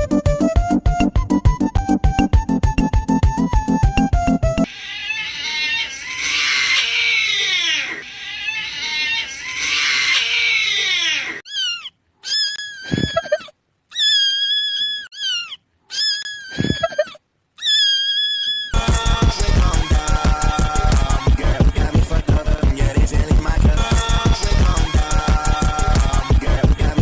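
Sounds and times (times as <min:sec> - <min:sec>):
cat meowing: 0:04.7 - 0:18.8
cat yowling: 0:04.7 - 0:18.8.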